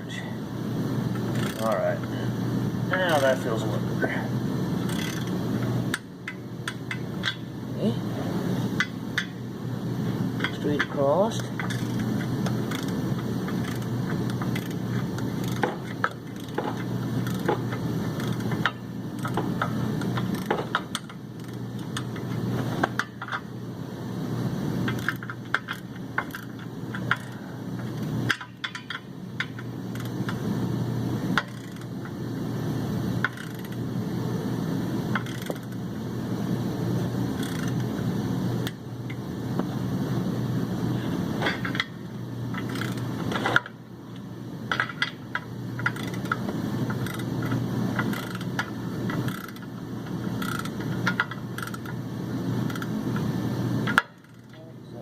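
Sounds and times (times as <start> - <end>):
steady low hum: 0.0 - 55.0
torque wrench ratchet clicking: 1.2 - 1.8, 4.8 - 5.3, 11.6 - 14.8, 15.4 - 19.5, 20.1 - 22.3, 24.9 - 27.4, 28.3 - 30.4, 31.4 - 31.9, 33.2 - 33.8, 35.1 - 35.8, 37.4 - 37.8, 42.5 - 43.0, 45.8 - 49.7, 50.4 - 52.0, 52.7 - 52.9, 53.9 - 54.5.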